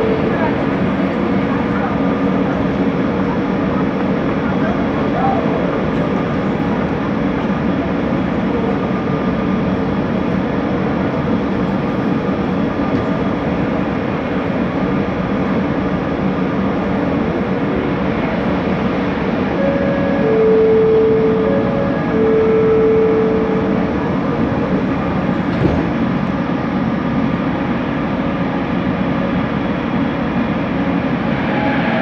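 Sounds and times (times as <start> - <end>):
clear steady tone: 0.0 - 0.8, 19.5 - 24.7
train running gear rumble: 0.0 - 32.0.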